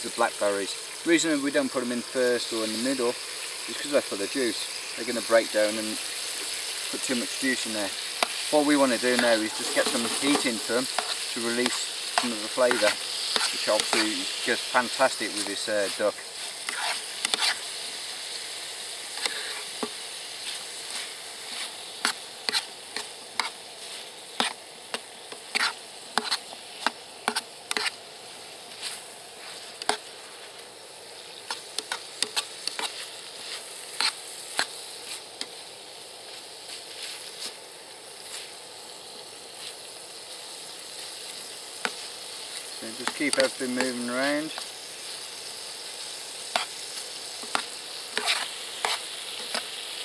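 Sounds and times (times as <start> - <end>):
food sizzling in a pan: 0.0 - 50.0
utensil scraping a pan: 8.1 - 17.7, 19.1 - 28.0, 31.5 - 35.2, 47.4 - 49.7.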